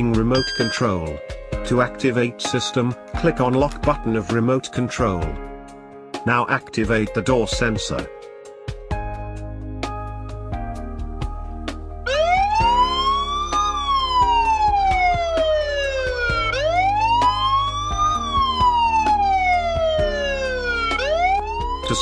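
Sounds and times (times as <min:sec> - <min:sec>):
alarm siren wailing: 0:00.3 - 0:01.1, 0:12.0 - 0:22.0.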